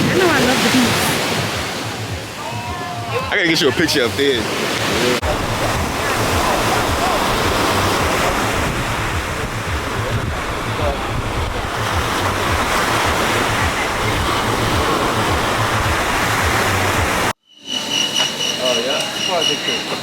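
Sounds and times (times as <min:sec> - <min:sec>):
ocean surf washing onto beach: 0:00.0 - 0:17.4
wind buffeting microphone: 0:04.8 - 0:17.3.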